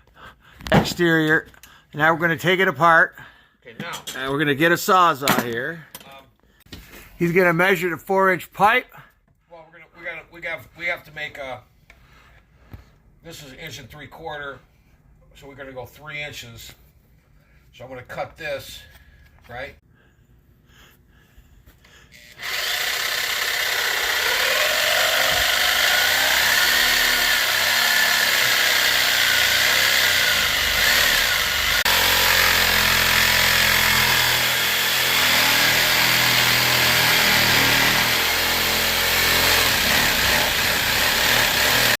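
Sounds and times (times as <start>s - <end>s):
reciprocating saw cutting pipe: 22.1s - 42.0s.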